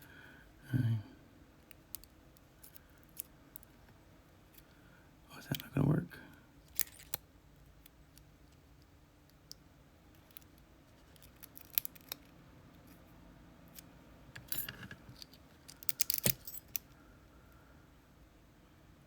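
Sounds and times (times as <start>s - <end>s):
lock tools clicking and scraping: 6.7s - 7.2s, 10.2s - 13.0s, 13.7s - 17.0s.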